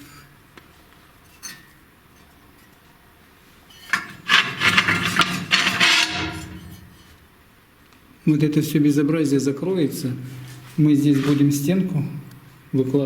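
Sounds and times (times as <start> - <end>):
scraping on brick: 3.7 - 7.3.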